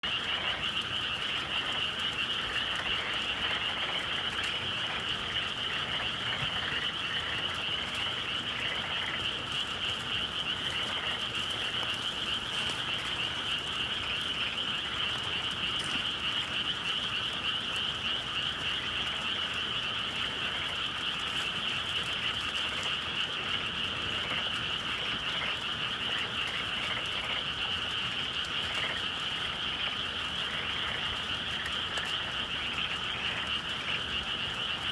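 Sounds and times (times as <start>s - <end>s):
chorus of frogs calling: 0.0s - 34.9s.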